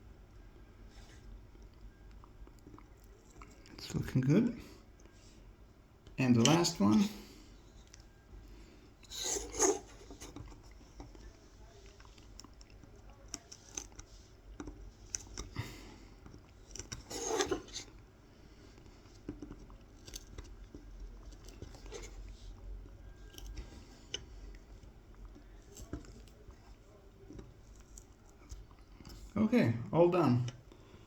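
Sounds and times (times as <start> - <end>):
knife scratching wood: 9.1 - 10.4, 16.8 - 17.9.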